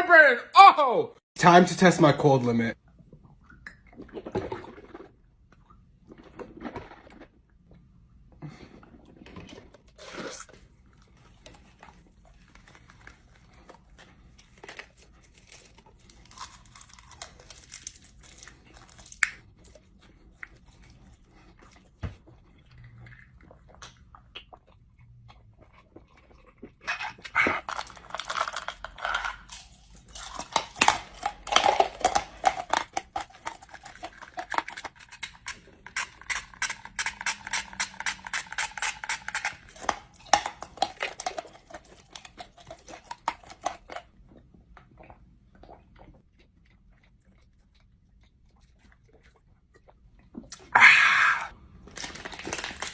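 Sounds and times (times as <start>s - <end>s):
crunching of frozen food: 9.1s - 21.3s, 25.6s - 44.1s, 50.4s - 52.9s
food packaging rustling: 51.8s - 52.9s.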